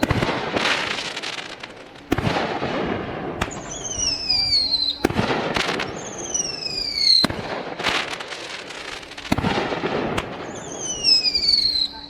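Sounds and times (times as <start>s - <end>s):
firework crackling: 0.0s - 12.0s
fireworks bangs: 0.0s - 12.0s
firework falling whistle: 3.5s - 7.3s, 10.2s - 12.0s.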